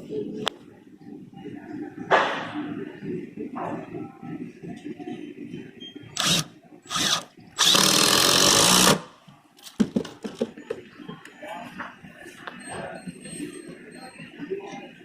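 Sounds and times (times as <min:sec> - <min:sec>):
cordless drill running: 0:06.2 - 0:09.0.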